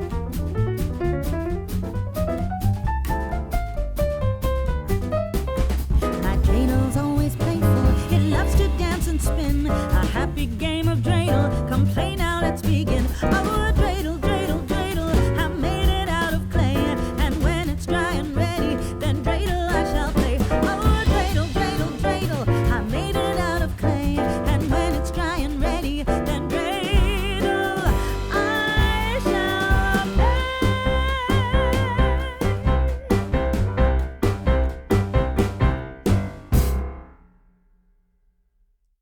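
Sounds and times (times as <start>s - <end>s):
song with singer: 6.3s - 10.4s, 17.8s - 33.2s.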